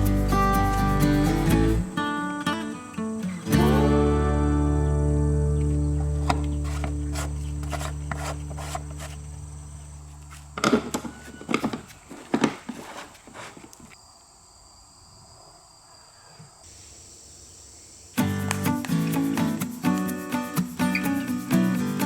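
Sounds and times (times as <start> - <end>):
acoustic guitar music: 0.0 - 11.2, 18.2 - 22.0.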